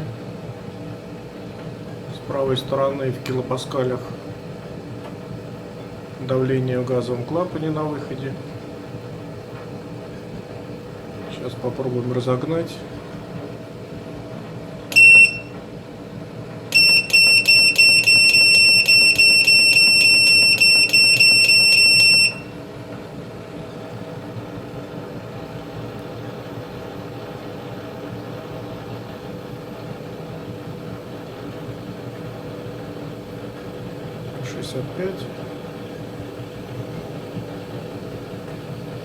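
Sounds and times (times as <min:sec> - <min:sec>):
boiler humming: 0:00.0 - 0:39.0
boiler control panel beeps: 0:14.9 - 0:15.7, 0:16.7 - 0:22.6.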